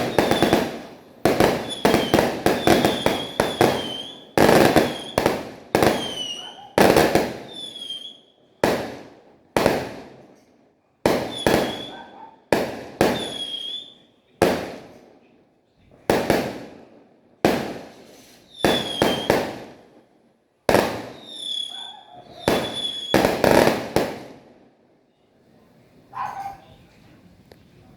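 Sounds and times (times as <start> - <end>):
fireworks whistles: 0.0 - 8.9, 11.1 - 14.1, 17.5 - 19.8, 20.7 - 24.4
fireworks bangs: 0.0 - 10.4, 11.0 - 15.1, 15.9 - 20.1, 20.7 - 24.6.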